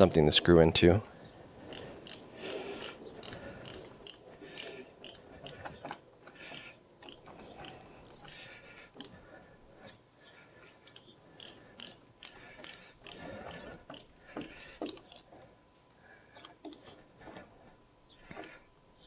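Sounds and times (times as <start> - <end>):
screwdriver ratchet clicking: 1.7 - 9.1, 10.8 - 15.2.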